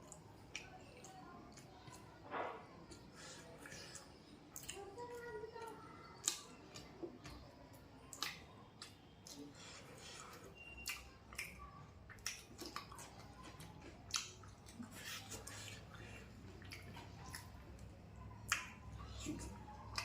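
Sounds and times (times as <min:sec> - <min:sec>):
person chewing food: 0:00.0 - 0:20.0
wet mouth smacks and clicks: 0:06.2 - 0:07.4, 0:08.1 - 0:09.5, 0:10.8 - 0:13.2, 0:14.1 - 0:15.8, 0:18.5 - 0:18.8.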